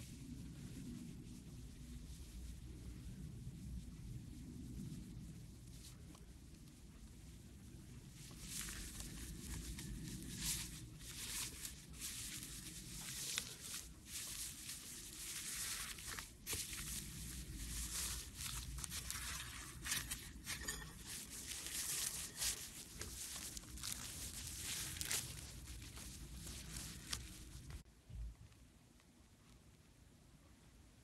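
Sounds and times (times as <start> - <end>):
foam slime crackling and popping: 8.2 - 27.8.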